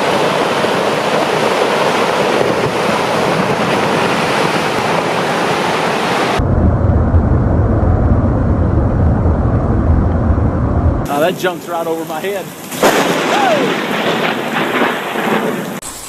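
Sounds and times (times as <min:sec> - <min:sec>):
loud steady rushing noise: 0:00.0 - 0:13.7
deep low rumble: 0:06.4 - 0:11.1.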